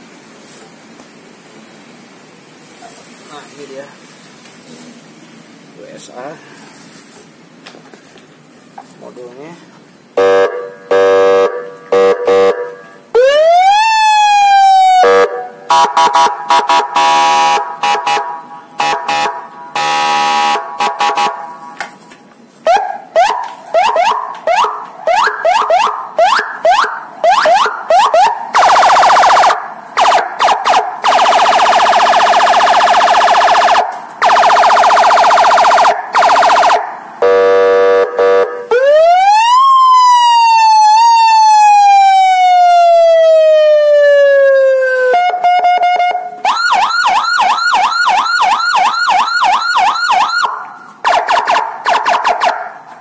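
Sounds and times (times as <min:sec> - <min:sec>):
electronic siren cycling tones: 0:10.2 - 0:18.2, 0:23.2 - 0:52.4.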